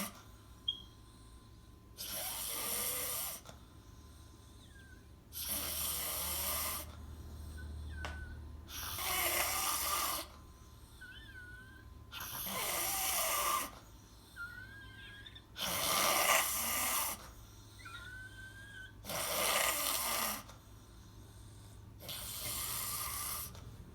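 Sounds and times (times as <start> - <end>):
faint wavering whistle: 0.6 - 1.0.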